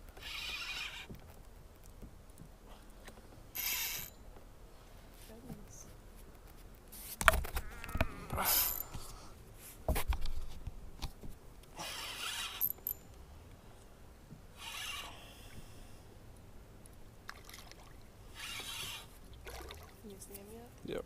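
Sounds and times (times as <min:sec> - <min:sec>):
fishing line zipping hiss: 0:00.2 - 0:01.1, 0:03.6 - 0:04.2, 0:08.4 - 0:09.3, 0:11.8 - 0:12.8, 0:14.6 - 0:15.9, 0:18.3 - 0:19.6
fishing reel clicking: 0:00.2 - 0:01.1.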